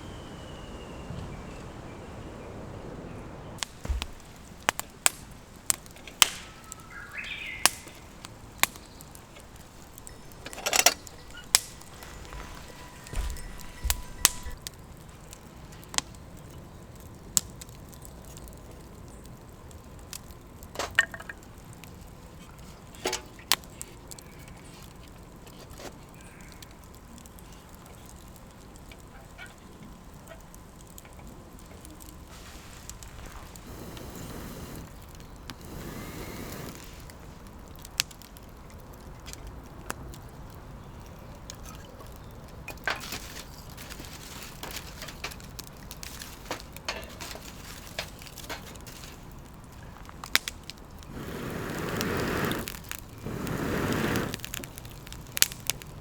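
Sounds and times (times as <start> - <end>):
campfire crackling and popping: 3.4 - 56.0.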